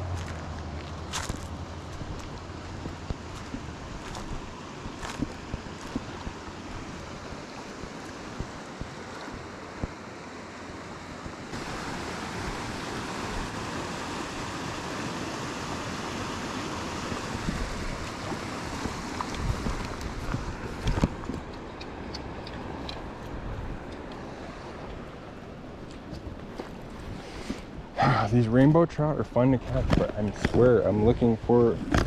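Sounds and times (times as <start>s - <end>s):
creek water rushing: 0.0s - 32.0s
wind buffeting microphone: 1.1s - 10.0s, 11.2s - 28.0s.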